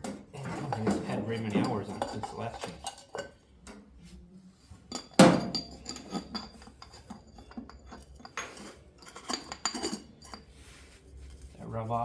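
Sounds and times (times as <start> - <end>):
metal clinks and taps: 4.9 - 10.5.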